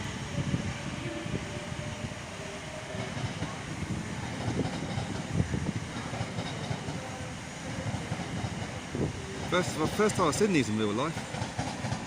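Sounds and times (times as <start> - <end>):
train wheels rumbling on track: 0.0 - 12.0
rail clicks and knocks: 3.0 - 12.0.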